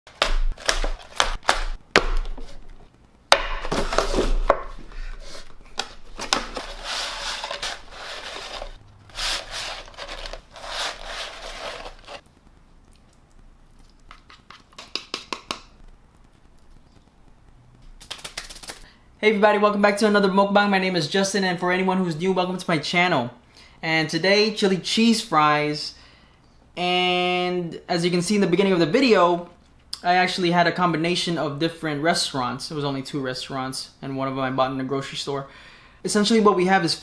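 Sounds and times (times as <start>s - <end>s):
food packaging rustling and crinkling: 0.1s - 3.0s, 3.6s - 14.9s
sharp clicks and taps: 12.5s - 18.8s.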